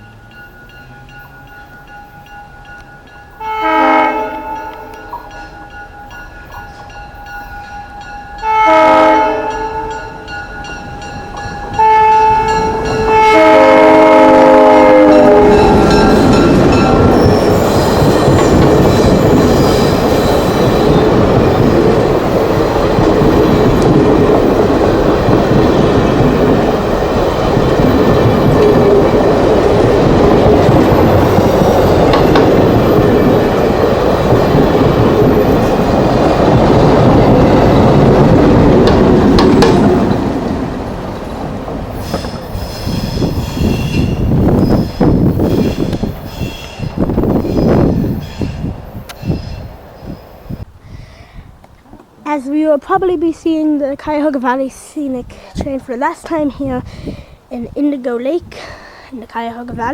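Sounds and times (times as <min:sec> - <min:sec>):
train wheels rumbling past: 0:00.0 - 0:50.7
train horn blasts: 0:03.3 - 0:05.6, 0:08.3 - 0:10.3, 0:11.7 - 0:17.6.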